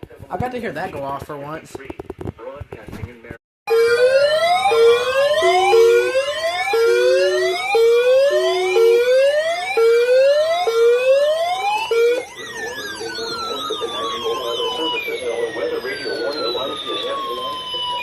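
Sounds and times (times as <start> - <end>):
falling and warbling siren tones: 3.7 - 18.0
rising electronic whoop alarm: 3.7 - 18.0.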